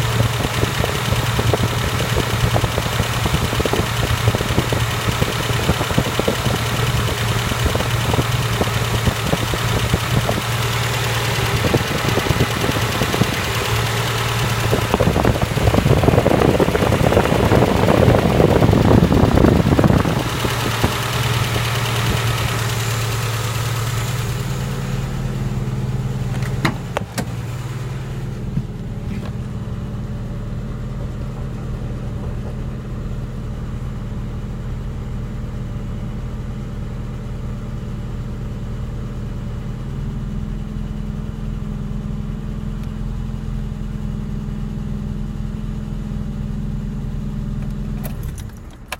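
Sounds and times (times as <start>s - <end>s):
radiator cooling fan rushing: 0.0s - 30.4s
car engine idling: 0.0s - 48.9s.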